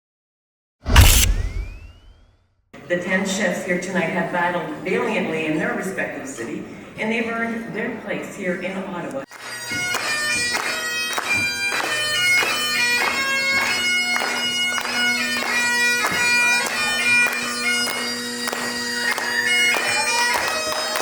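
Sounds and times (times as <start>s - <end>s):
bagpipes playing a tune: 9.4s - 21.0s.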